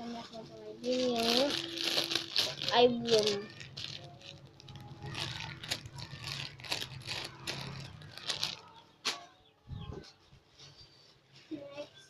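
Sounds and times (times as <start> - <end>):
plastic packaging crinkling: 0.8 - 8.8.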